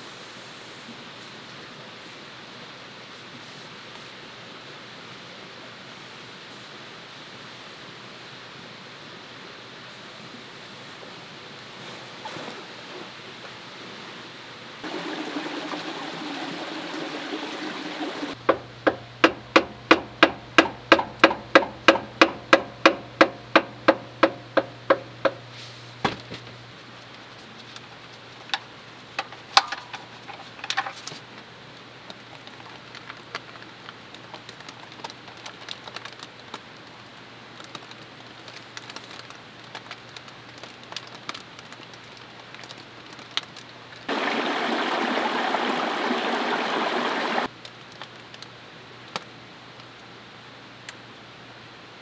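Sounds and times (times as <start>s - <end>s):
sharp knocks: 18.4s - 26.3s.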